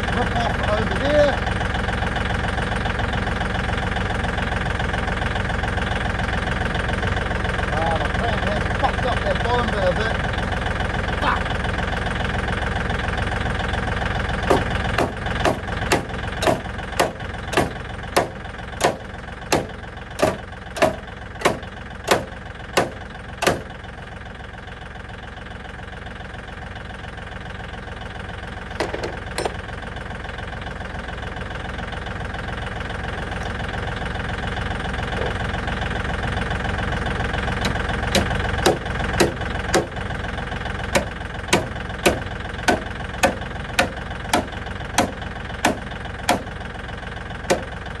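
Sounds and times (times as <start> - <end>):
tractor engine idling: 0.0 - 48.0
sharp evenly spaced knocks: 14.4 - 23.8, 37.6 - 40.0, 40.9 - 46.5, 47.5 - 47.7.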